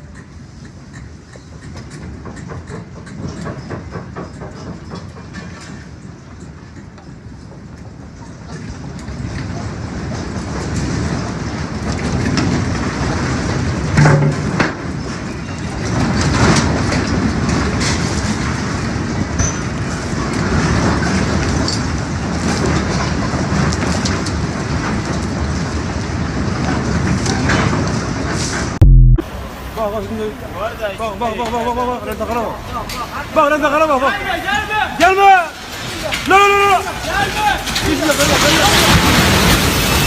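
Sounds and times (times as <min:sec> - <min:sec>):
deep earthquake rumble: 0:28.8 - 0:29.3.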